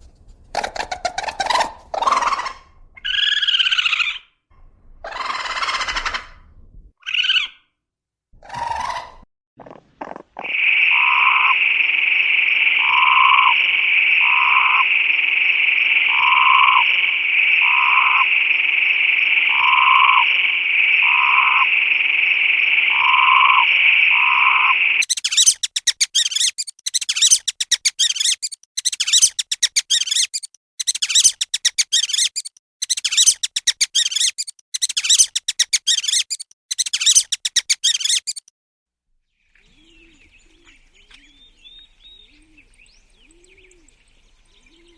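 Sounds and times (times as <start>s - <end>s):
animal chattering trills: 0.5s - 4.3s, 5.0s - 6.4s, 8.4s - 11.6s, 12.7s - 38.5s
frog chorus trilling: 5.1s - 6.4s, 10.4s - 25.4s
low frog call: 8.4s - 25.0s.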